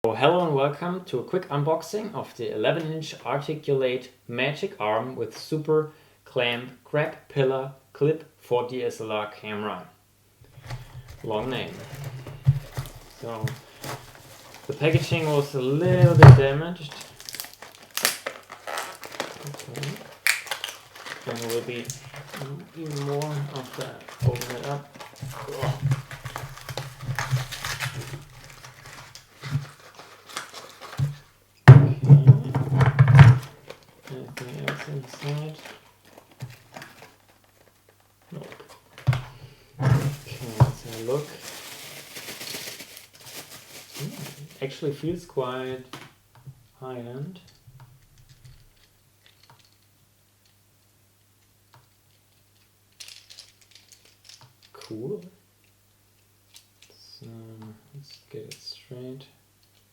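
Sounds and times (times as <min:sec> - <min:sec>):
packaging rustling and crinkling: 0:10.5 - 0:44.8, 0:52.6 - 0:54.7.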